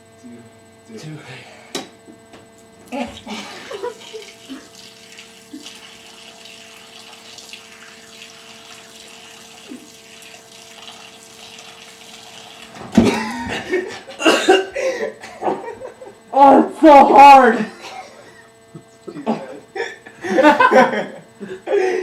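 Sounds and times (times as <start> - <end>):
dispenser hum: 0.0 - 22.0
water dispenser running: 2.9 - 15.1
person choking and coughing: 13.0 - 15.6, 19.1 - 20.0.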